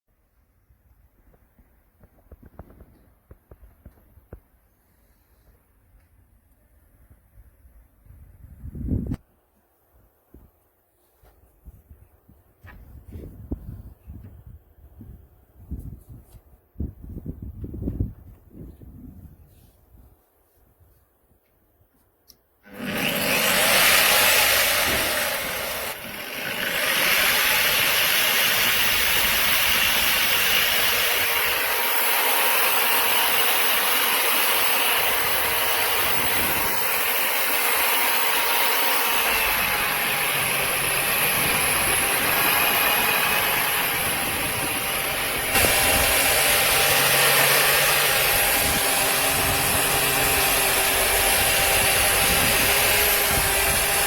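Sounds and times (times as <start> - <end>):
brush sander motor whine: 22.6 - 54.0.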